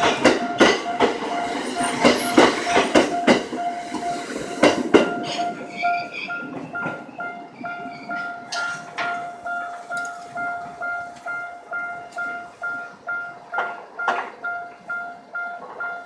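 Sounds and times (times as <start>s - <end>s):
train wheels clacking over rail joints: 0.0s - 7.2s, 13.5s - 14.6s
crossing warning bell ringing: 0.0s - 16.0s
high squealing tones: 1.2s - 6.4s.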